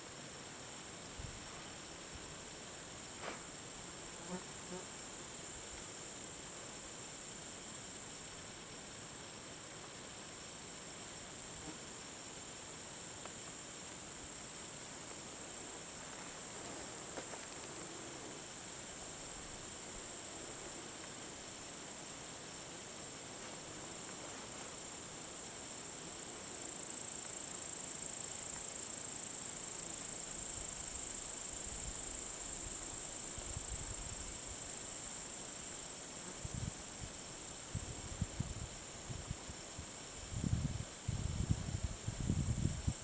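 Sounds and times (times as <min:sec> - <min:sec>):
soft hiss: 0:00.0 - 0:43.0
insects chirring: 0:25.2 - 0:38.7.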